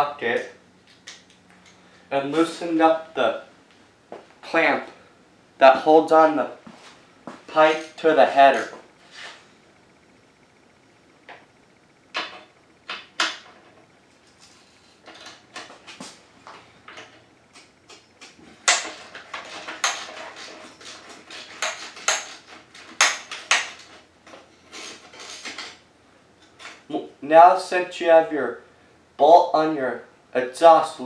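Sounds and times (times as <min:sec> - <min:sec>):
ratchet clicks and clanks: 0:16.9 - 0:25.8.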